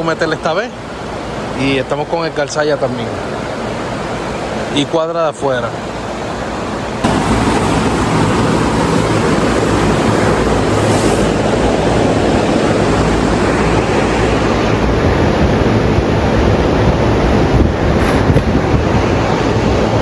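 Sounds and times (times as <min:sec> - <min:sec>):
wind buffeting microphone: 0:07.0 - 0:20.0.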